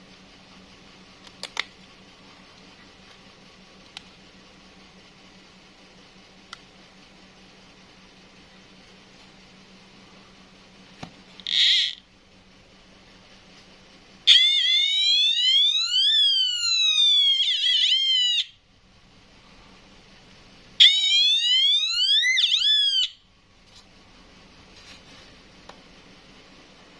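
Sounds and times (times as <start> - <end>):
electronic alarm siren: 11.4 - 12.0, 14.3 - 18.6, 20.8 - 23.2.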